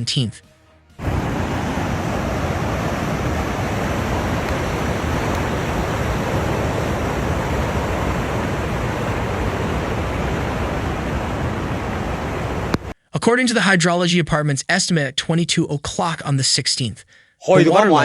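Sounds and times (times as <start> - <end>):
rushing floodwater: 1.0 - 12.9.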